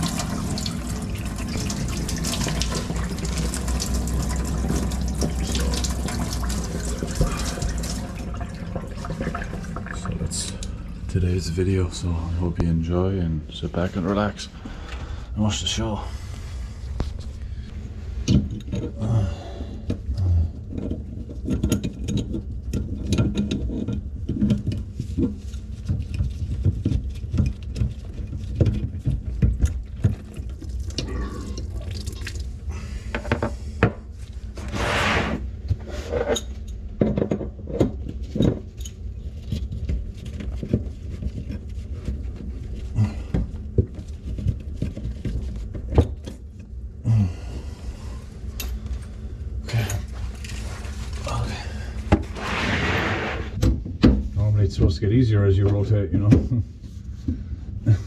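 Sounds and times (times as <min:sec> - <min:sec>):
short hiss: 0:52.3 - 0:53.6.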